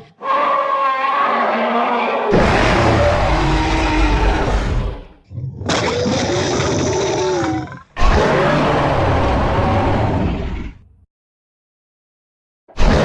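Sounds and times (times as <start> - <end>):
dinosaur roars: 0.0 - 10.9, 12.8 - 13.0.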